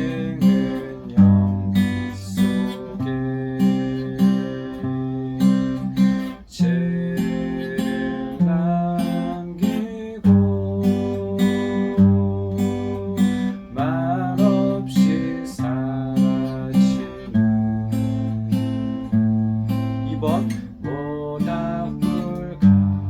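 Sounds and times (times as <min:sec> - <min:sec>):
fingerstyle acoustic guitar waltz: 0:00.0 - 0:23.0.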